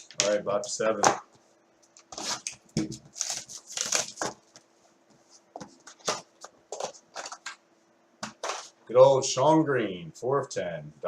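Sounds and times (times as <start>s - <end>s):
cardboard and wrapping rustling: 2.1s - 4.7s.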